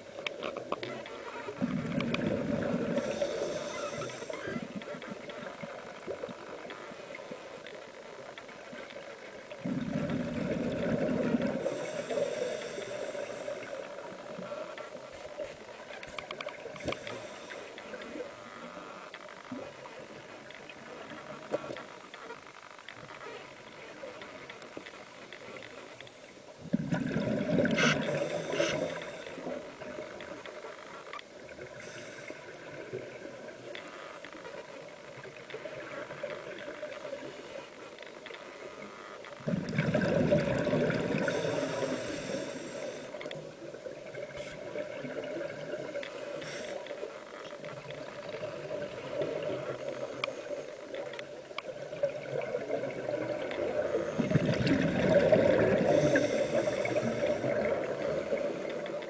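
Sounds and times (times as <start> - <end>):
water sloshing and splashing: 37.9 - 42.3, 43.2 - 59.0.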